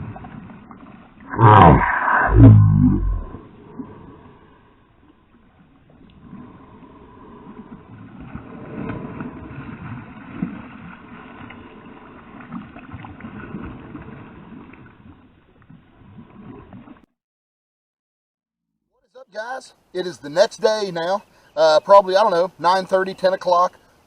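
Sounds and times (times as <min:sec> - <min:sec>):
water splashing around kayak: 0:00.0 - 0:17.1.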